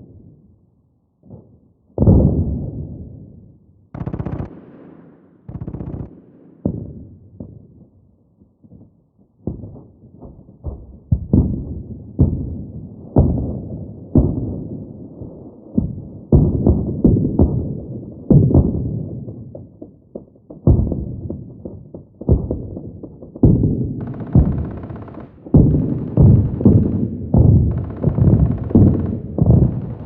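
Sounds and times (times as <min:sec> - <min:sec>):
rapid automatic gunfire: 0:04.0 - 0:07.0, 0:23.4 - 0:30.0
distant explosions: 0:04.0 - 0:30.0.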